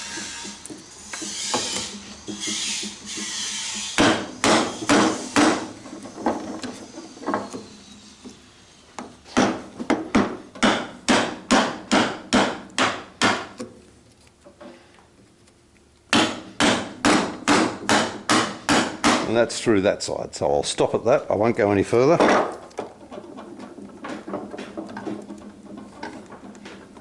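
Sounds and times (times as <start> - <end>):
mallet knocking on chisel: 9.4 - 13.6.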